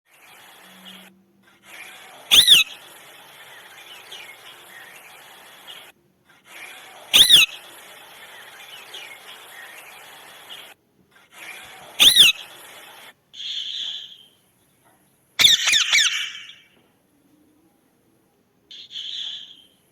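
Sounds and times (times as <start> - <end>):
background hiss: 0.1 - 15.4
parrot harsh squawks: 2.3 - 2.8, 7.1 - 7.6, 12.0 - 12.6, 15.4 - 16.8
parrot shrill cry: 2.3 - 2.8, 7.1 - 7.6, 12.0 - 12.5, 15.4 - 16.7.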